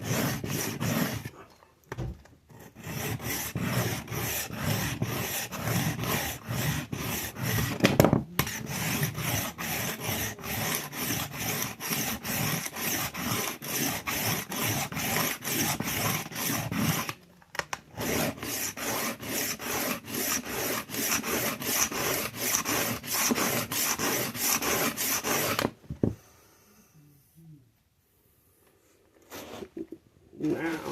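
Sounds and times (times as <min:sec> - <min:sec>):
knife rasping on sharpening stone: 0:08.4 - 0:17.1.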